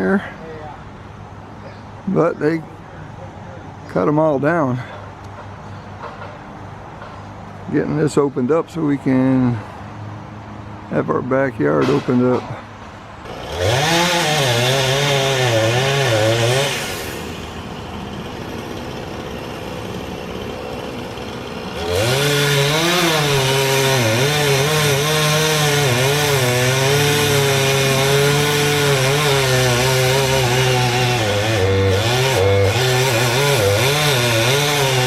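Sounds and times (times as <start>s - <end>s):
chainsaw revving: 13.2s - 35.0s.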